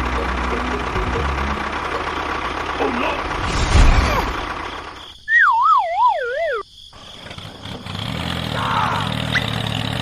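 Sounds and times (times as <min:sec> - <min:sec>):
cartoon wavering whistle: 0:05.3 - 0:06.6.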